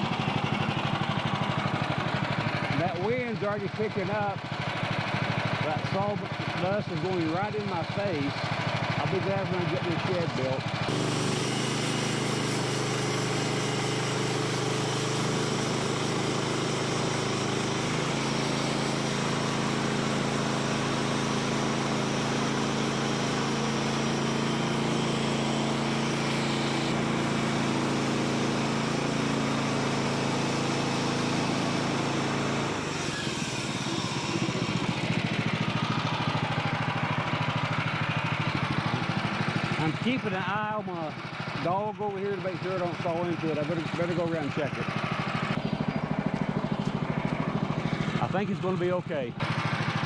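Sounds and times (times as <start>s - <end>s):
gas engine running under load: 0.0s - 50.0s
band blade cutting log: 10.9s - 36.5s.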